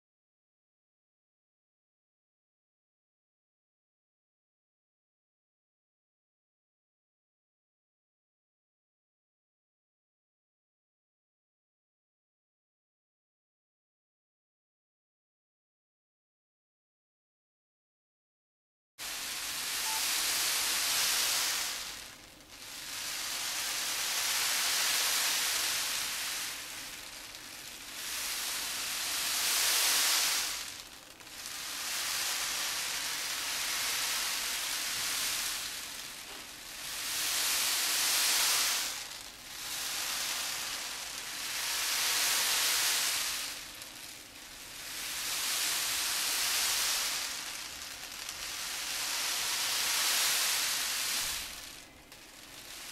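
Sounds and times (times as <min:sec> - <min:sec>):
beans rolling like surf: 0:19.0 - 0:52.9.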